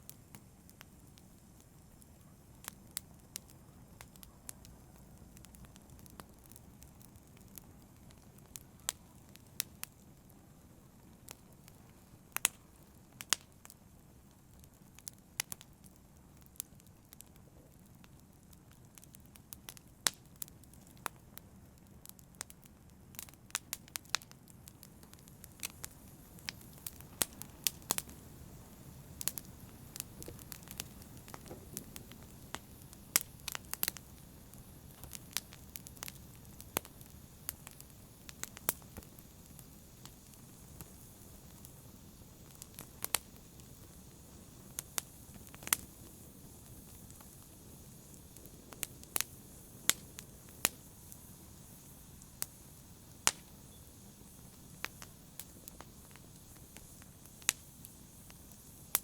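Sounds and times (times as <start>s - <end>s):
wood fire crackling: 0.0s - 59.0s
rush of flame: 23.2s - 59.0s.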